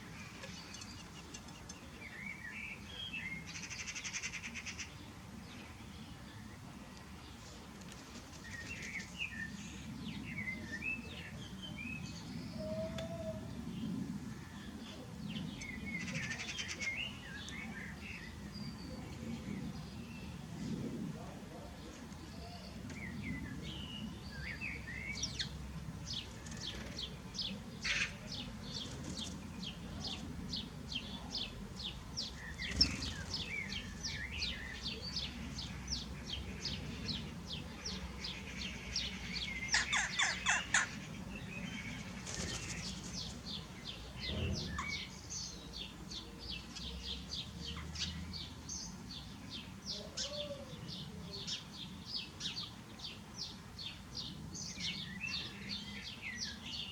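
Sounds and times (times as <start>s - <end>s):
small birds chirping: 0.0s - 7.5s, 22.1s - 56.9s.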